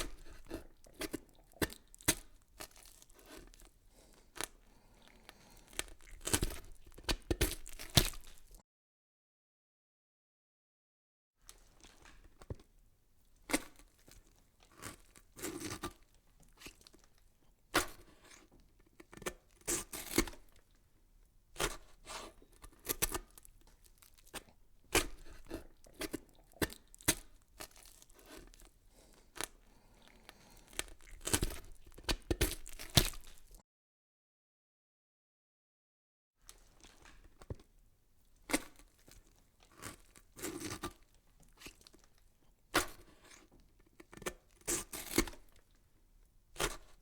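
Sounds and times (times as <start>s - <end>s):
crackling and tearing: 0.0s - 8.6s, 19.0s - 20.7s, 21.6s - 33.6s, 38.5s - 45.8s.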